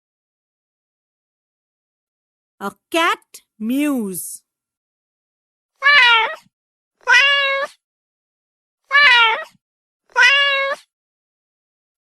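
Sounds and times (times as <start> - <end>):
cat meowing: 5.8 - 7.8, 8.9 - 10.9.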